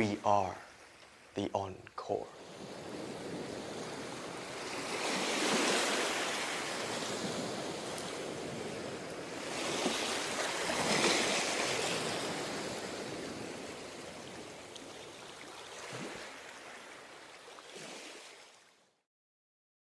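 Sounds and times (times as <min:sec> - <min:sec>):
ocean waves washing on shore: 0:00.0 - 0:18.7.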